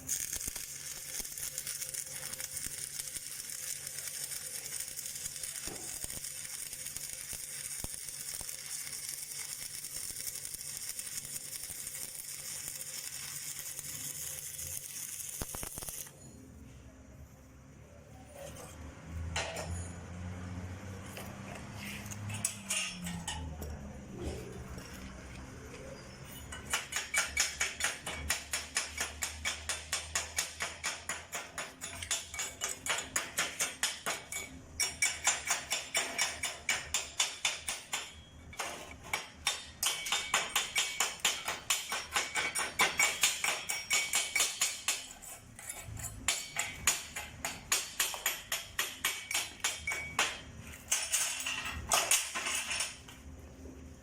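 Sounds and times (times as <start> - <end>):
chipping hammer tapping steel: 0.0 - 16.1, 26.5 - 52.4.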